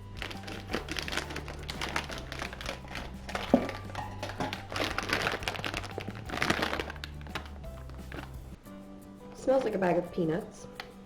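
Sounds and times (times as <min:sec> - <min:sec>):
plastic wrapper crinkling: 0:00.0 - 0:08.6
soft background music: 0:00.0 - 0:11.0.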